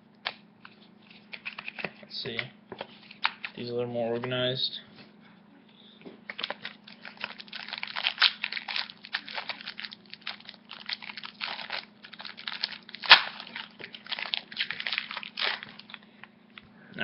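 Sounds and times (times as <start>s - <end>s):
foil wrapper crinkling and tearing: 6.3s - 16.0s.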